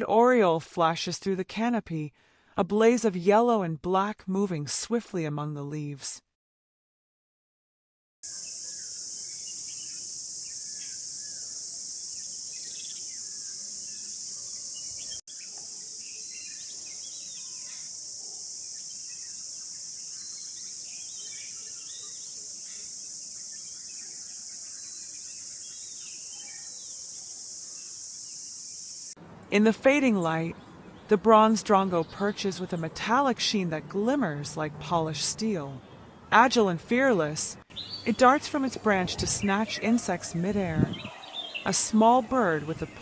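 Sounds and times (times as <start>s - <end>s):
insect chorus: 8.2s - 29.2s.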